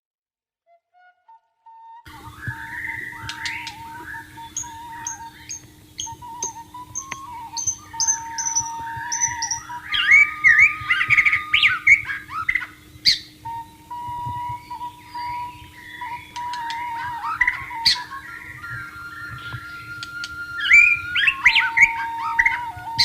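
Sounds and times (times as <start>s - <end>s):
bamboo flute soft notes: 0.7s - 23.0s
bird singing whistled notes: 0.9s - 23.0s.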